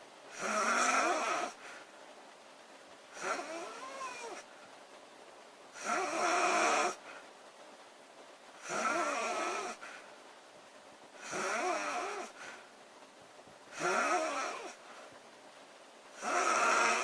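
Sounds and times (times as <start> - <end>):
quiet breathing: 0.0 - 4.9, 5.6 - 15.4
girl snoring: 0.3 - 1.6, 3.2 - 4.4, 5.8 - 7.0, 8.6 - 9.9, 11.2 - 12.4, 13.7 - 14.8, 16.2 - 17.0.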